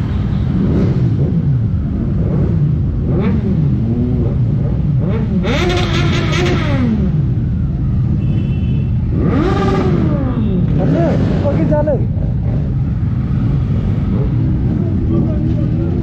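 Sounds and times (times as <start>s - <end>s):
motorcycle engines revving: 0.0s - 16.0s.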